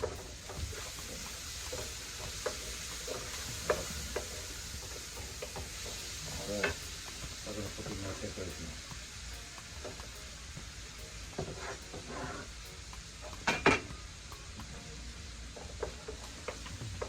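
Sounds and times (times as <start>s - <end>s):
vegetables sizzling in a frying pan: 0.0s - 17.0s
utensil knocking against pan: 13.2s - 14.0s.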